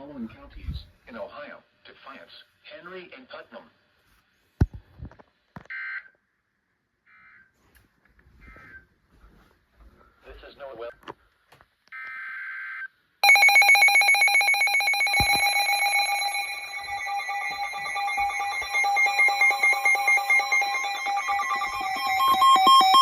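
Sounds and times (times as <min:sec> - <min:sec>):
digital header data burst: 0:13.2 - 0:23.0
pulsing electronic alert tone: 0:13.2 - 0:23.0.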